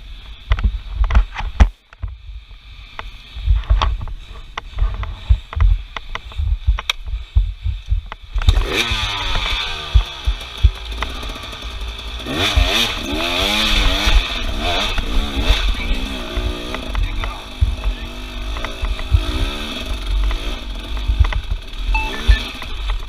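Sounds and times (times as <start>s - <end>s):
heavy low thumps and knocks: 3.4s - 8.8s, 16.3s - 21.6s
vehicle engine revving: 6.2s - 23.0s.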